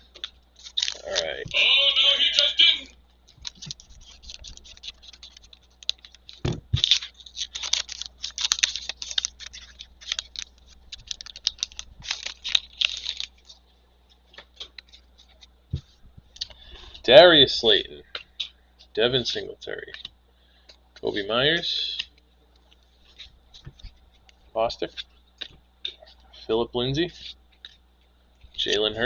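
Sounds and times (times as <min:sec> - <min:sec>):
wrapper crinkling and tearing: 0:00.6 - 0:02.6, 0:03.3 - 0:13.6.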